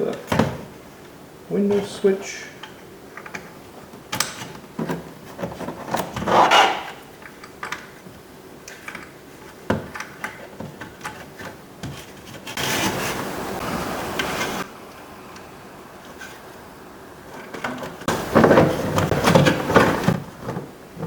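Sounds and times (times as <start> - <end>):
scraping rub on door trim: 12.1 - 14.6
steady rushing noise: 12.5 - 20.2.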